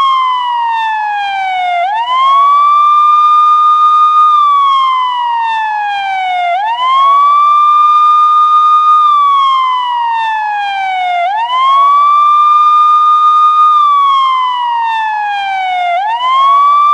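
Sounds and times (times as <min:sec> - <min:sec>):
police siren wailing: 0:00.0 - 0:16.9.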